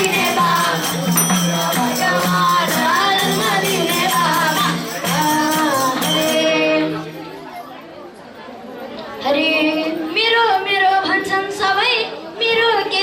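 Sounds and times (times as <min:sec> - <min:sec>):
devotional singing: 0:00.0 - 0:07.2
jingling hand percussion: 0:00.0 - 0:07.4.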